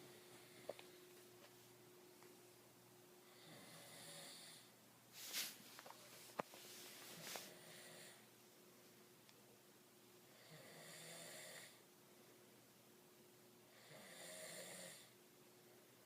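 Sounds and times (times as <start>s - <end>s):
man snoring: 3.3s - 4.7s, 7.5s - 8.2s, 10.3s - 11.8s, 13.7s - 15.1s.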